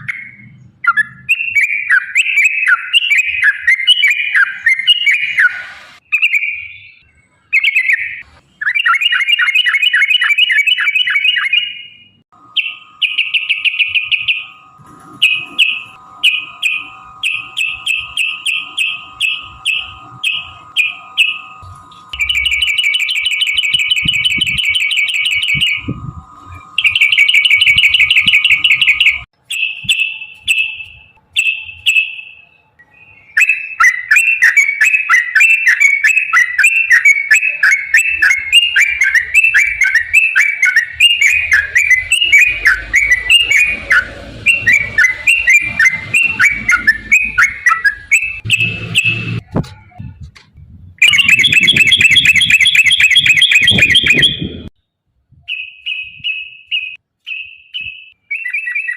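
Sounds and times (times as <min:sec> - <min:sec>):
bulbuls trilling and chattering: 0:12.5 - 0:29.2, 0:33.3 - 0:49.4.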